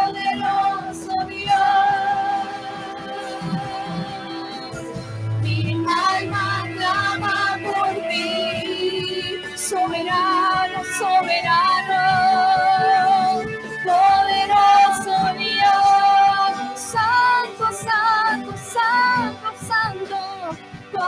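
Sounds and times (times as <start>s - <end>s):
band playing worship music: 0.0s - 21.0s
woman singing: 0.0s - 21.0s.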